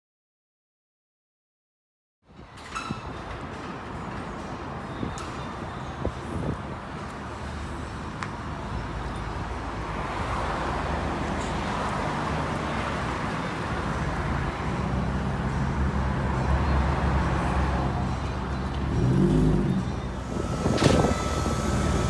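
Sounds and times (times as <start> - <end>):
road noise: 2.2 - 22.0
car engine running: 20.2 - 22.0.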